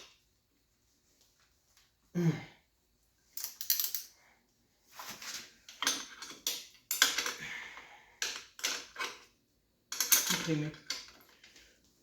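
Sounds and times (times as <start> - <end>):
metal tools clinking and rattling: 3.4 - 4.1, 5.2 - 7.5, 8.2 - 9.3, 9.9 - 11.5.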